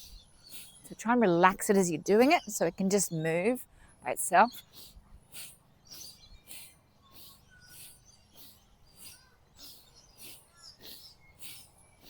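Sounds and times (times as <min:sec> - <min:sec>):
short high bird chirps: 0:04.5 - 0:11.8.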